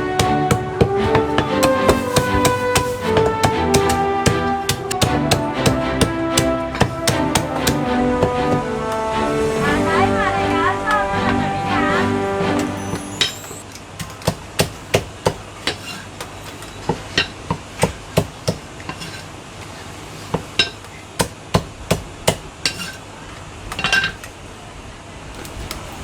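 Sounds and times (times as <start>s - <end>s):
cleaver chopping meat on block: 0.0s - 8.6s, 14.0s - 15.9s, 17.5s - 18.6s, 21.2s - 22.5s.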